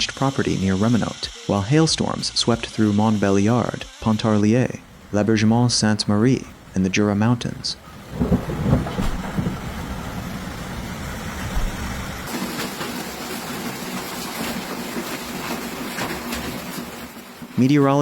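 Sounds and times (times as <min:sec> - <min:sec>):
thunderstorm wind and rain: 0:07.6 - 0:12.8.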